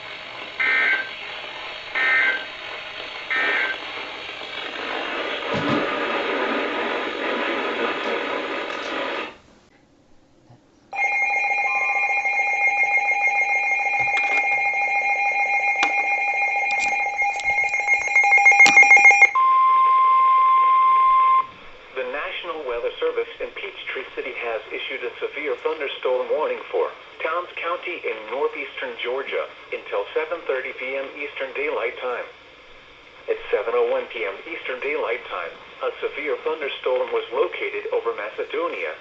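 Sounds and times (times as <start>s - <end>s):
radio hiss: 0.0s - 9.7s, 21.5s - 39.0s
digital data bursts: 0.6s - 5.0s
electronic alert tone: 15.7s - 20.6s.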